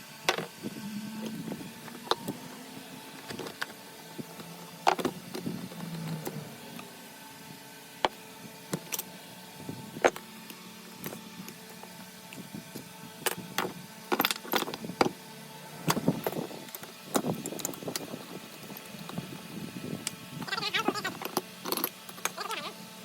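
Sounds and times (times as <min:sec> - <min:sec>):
low hum: 0:00.2 - 0:09.0
metal tools clicking and knocking: 0:20.8 - 0:22.5.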